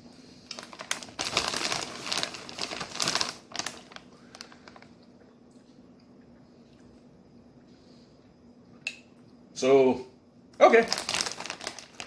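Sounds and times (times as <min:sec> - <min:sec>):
chip bag crinkling: 0:00.5 - 0:05.0, 0:10.7 - 0:12.0.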